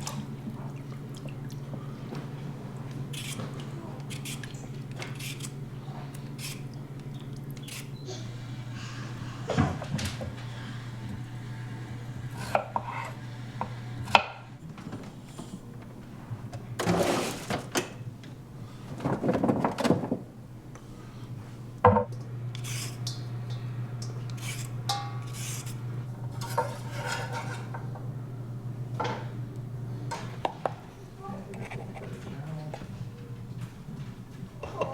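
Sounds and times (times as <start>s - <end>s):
steady low hum: 20.3s - 34.9s
dishes and utensils clinking: 21.9s - 28.1s, 34.6s - 34.9s.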